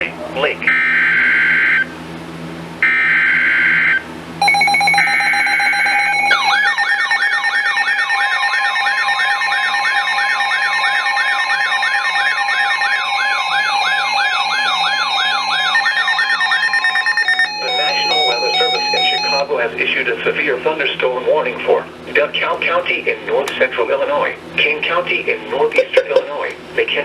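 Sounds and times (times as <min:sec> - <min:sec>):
rising and falling siren sweep: 0:02.8 - 0:19.5
screeching two-tone data bursts: 0:04.4 - 0:19.5
steady alert tone: 0:04.4 - 0:19.6.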